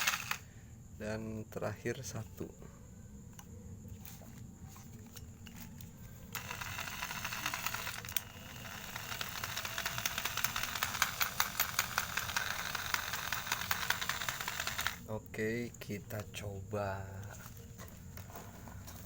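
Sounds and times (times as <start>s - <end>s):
electric jigsaw rattling: 0.0s - 0.4s, 6.4s - 15.1s.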